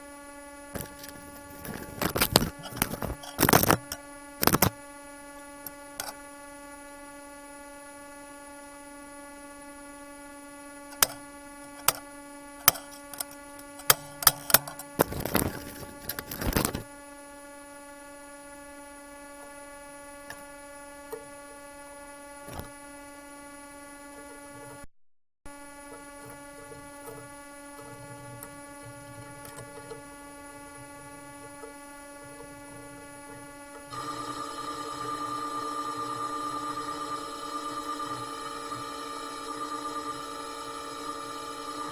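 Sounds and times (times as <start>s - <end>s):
shop machine electric hum: 0.7s - 4.8s, 33.9s - 41.9s.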